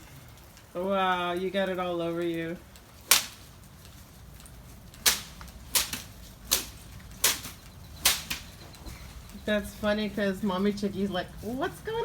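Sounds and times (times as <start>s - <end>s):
leaves rustling: 0.0s - 12.0s
bush branches being whacked: 2.7s - 10.2s.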